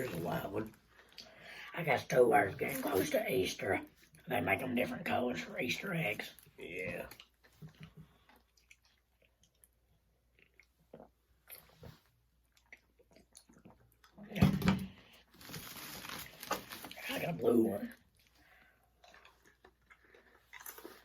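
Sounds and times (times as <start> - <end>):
chewing and crunching candy: 6.2 - 14.4, 15.2 - 21.0.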